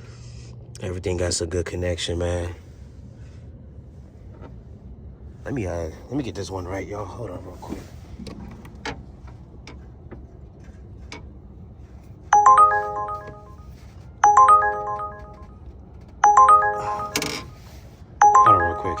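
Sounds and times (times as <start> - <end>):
phone ringtone chiming: 12.4 - 15.6, 16.2 - 19.0.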